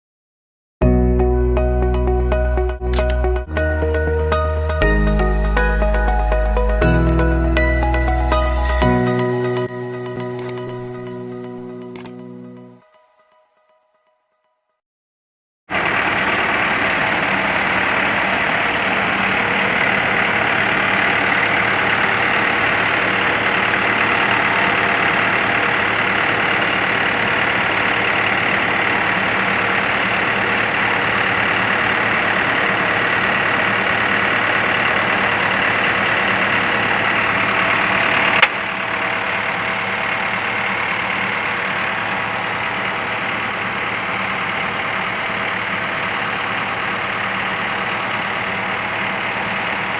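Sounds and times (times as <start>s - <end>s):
sharp click: 2.9s - 3.3s, 10.3s - 10.8s, 12.0s - 12.2s
bus engine idling: 15.7s - 49.9s.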